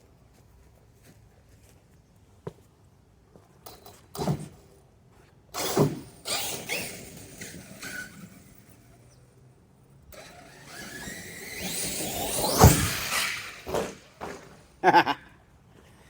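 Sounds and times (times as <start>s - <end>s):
electric motor whining: 10.1s - 14.5s.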